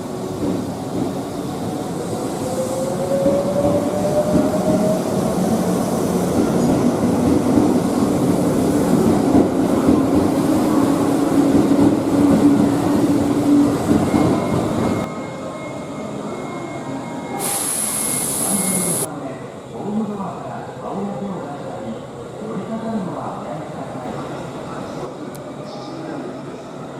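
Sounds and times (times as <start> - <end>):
train wheels rumbling on rails: 0.0 - 15.1
low train motor tone: 14.2 - 19.1.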